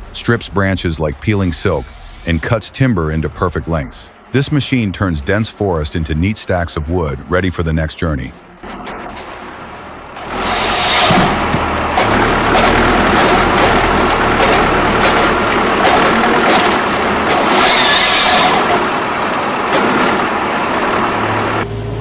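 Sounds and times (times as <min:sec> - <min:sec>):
hissing burst: 0:01.2 - 0:02.7, 0:10.2 - 0:12.8, 0:17.2 - 0:20.7
heavy machine engine under load: 0:08.4 - 0:22.0
machine knocks and clatter: 0:11.0 - 0:17.9.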